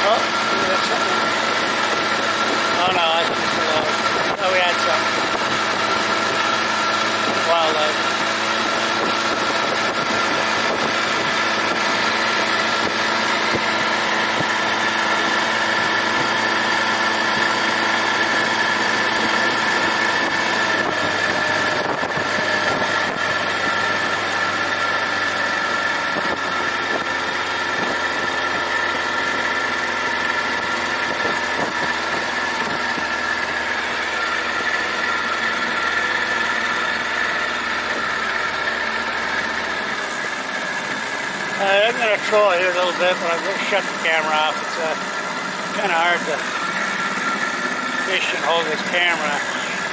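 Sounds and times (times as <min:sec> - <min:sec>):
outboard motor running: 0:00.0 - 0:49.9.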